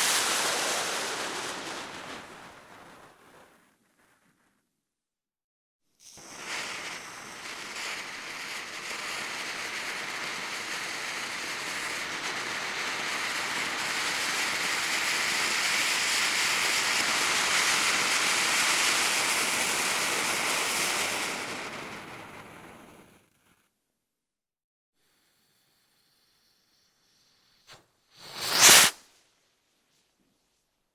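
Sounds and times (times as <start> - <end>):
firework hissing and spraying: 0.0 - 4.0, 6.1 - 23.2, 25.3 - 29.1.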